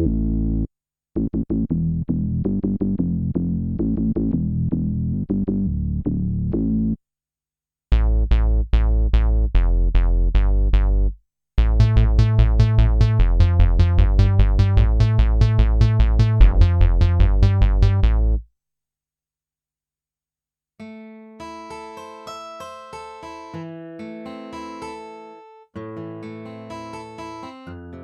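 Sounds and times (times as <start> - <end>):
synthesizer notes with heavy bass: 0.0 - 7.0, 7.9 - 18.4.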